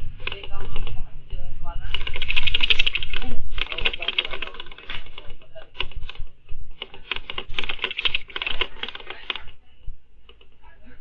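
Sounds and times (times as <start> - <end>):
loose objects rattling: 1.8 - 9.6.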